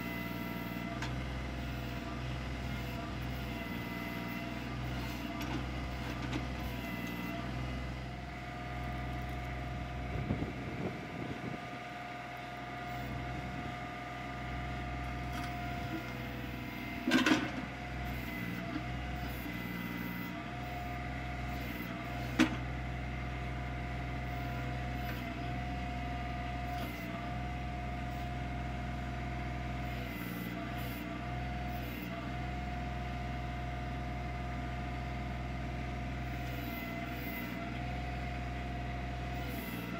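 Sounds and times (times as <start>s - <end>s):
tractor diesel engine running: 0.0s - 39.9s
hydraulic whine: 3.1s - 18.6s.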